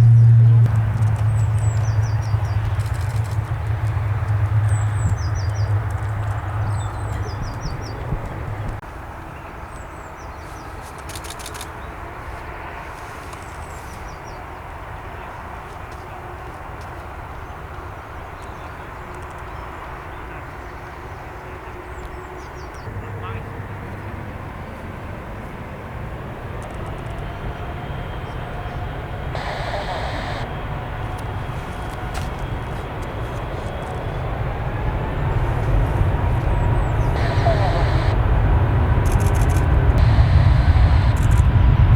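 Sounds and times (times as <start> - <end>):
jet engine rumble: 0.0 - 8.8, 28.7 - 41.9
faint steady hum: 29.4 - 30.5, 36.4 - 38.5, 39.5 - 41.9
songbird chirping: 36.6 - 38.2.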